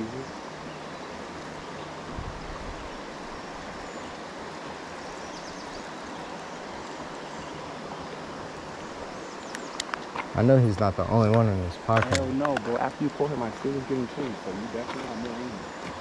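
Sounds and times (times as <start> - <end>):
stream water rushing: 0.0 - 16.0.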